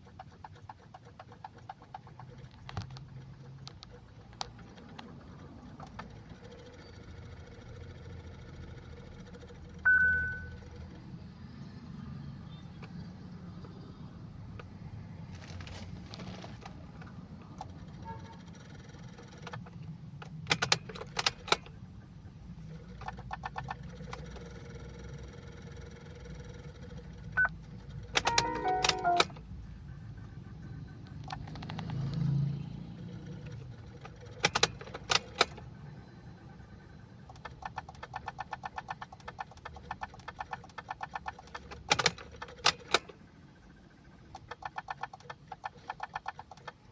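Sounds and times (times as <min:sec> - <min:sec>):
rapid clicking: 0:00.0 - 0:09.8, 0:22.6 - 0:29.3, 0:37.1 - 0:43.1, 0:43.8 - 0:46.9
short chime tones: 0:09.9 - 0:10.5, 0:28.2 - 0:29.3
high warning beep: 0:09.9 - 0:10.6, 0:28.2 - 0:29.4.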